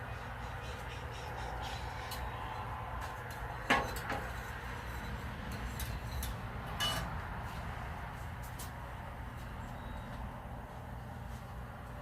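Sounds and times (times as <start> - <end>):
dishes and utensils clattering: 3.7 - 7.1.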